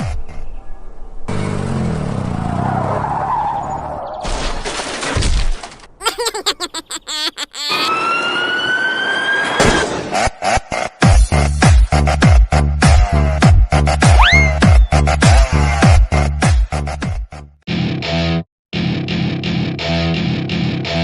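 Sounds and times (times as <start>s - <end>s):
rising siren-like tone: 7.8s - 9.8s.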